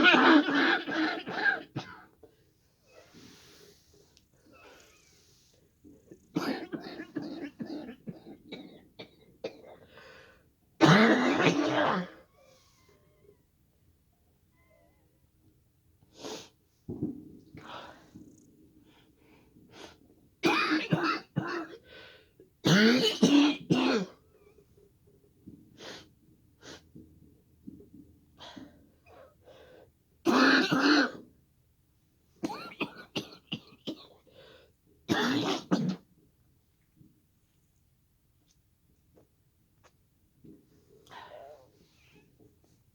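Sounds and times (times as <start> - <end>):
hoarse choking cough: 0.0 - 2.2, 6.3 - 9.8, 10.8 - 12.2, 20.4 - 21.8, 22.6 - 24.2, 30.3 - 31.2, 32.4 - 34.2, 35.1 - 36.0
person coughing: 6.4 - 9.8, 10.8 - 12.2.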